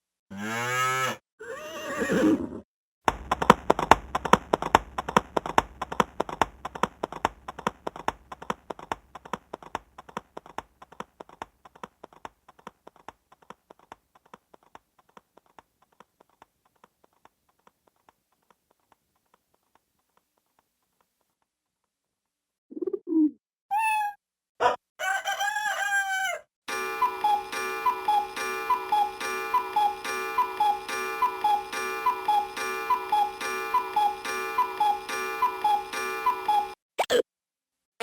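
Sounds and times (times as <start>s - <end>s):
synthesized horse whinny: 0.3s - 2.6s
synthesized galloping hoofbeats: 3.1s - 16.7s.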